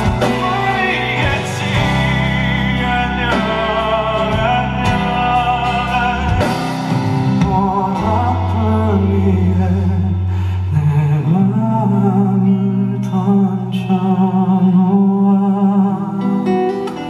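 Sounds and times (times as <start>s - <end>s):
live band playing: 0.0s - 10.5s, 16.2s - 17.0s
person singing long notes: 0.0s - 17.0s.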